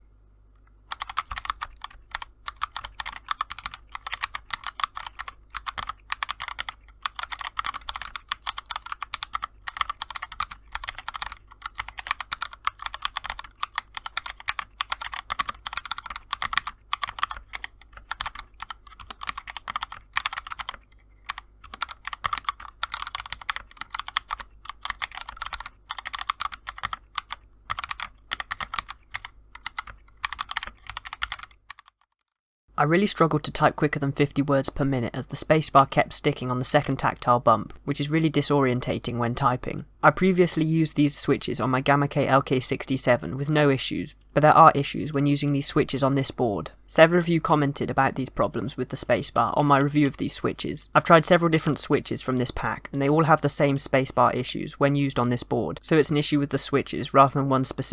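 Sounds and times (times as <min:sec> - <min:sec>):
mechanical keyboard typing: 0:00.8 - 0:32.4.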